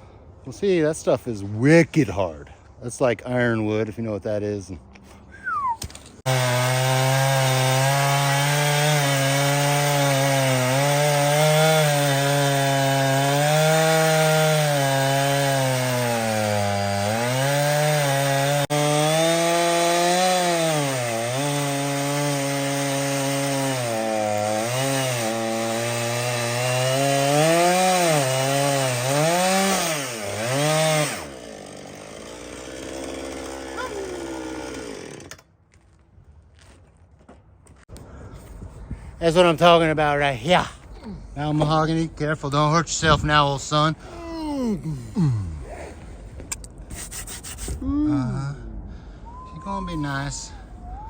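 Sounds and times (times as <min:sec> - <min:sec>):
chainsaw cutting through log: 0:05.8 - 0:35.5.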